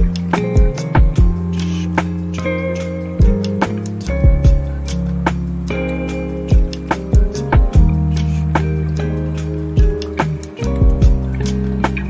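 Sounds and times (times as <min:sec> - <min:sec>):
kick drum: 0:00.0 - 0:01.4, 0:03.2 - 0:03.5, 0:04.2 - 0:04.7, 0:06.5 - 0:08.0, 0:09.8 - 0:10.0, 0:10.8 - 0:11.2
lo-fi hip-hop music: 0:00.0 - 0:12.0.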